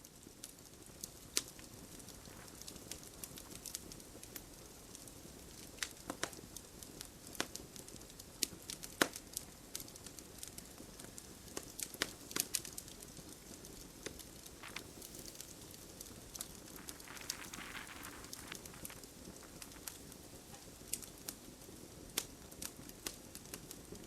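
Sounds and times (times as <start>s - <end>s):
faint hiss: 0.0s - 24.0s
campfire crackling: 0.7s - 24.0s
sharp fire pops: 14.6s - 23.6s.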